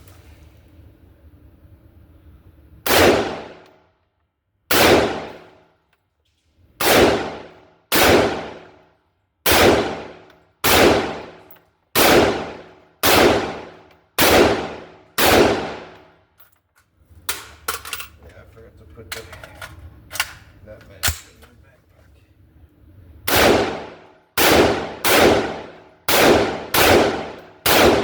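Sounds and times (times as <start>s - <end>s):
rifle shots: 2.8s - 3.7s, 4.7s - 5.6s, 6.8s - 8.8s, 9.4s - 16.1s, 23.3s - 28.0s.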